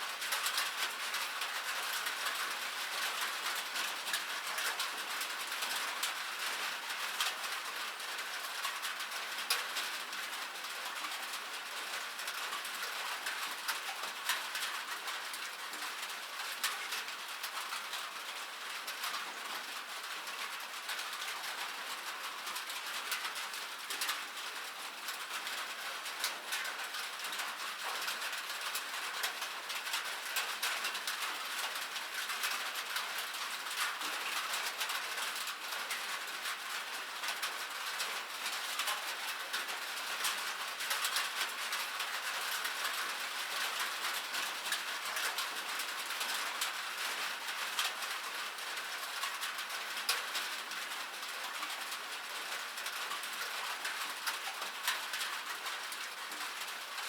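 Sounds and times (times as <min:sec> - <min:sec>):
rain pattering on metal: 0:00.0 - 0:57.0.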